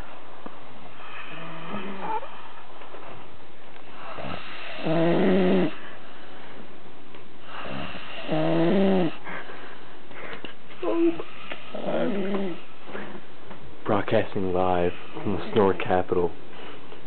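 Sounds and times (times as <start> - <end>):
person snoring: 1.0 - 2.3, 4.0 - 5.8, 7.5 - 9.2, 10.8 - 12.6.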